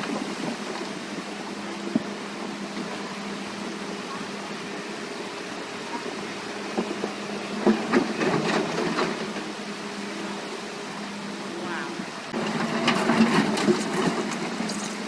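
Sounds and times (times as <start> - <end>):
excavator humming: 0.0 - 15.0
knocks and clatter: 12.4 - 15.0.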